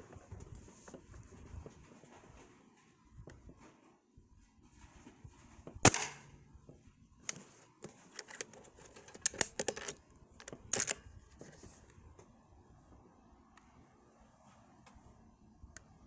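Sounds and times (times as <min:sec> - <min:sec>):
clicks and knocks of handling: 0:07.2 - 0:12.0.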